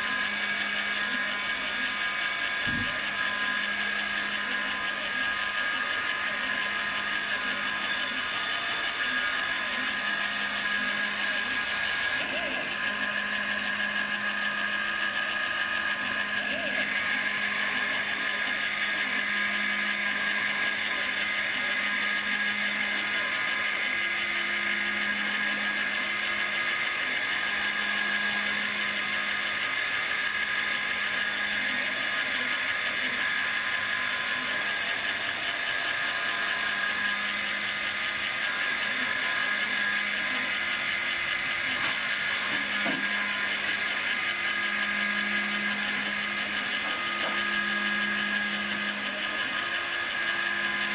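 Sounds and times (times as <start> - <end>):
milling spindle high whine: 0.0 - 50.9.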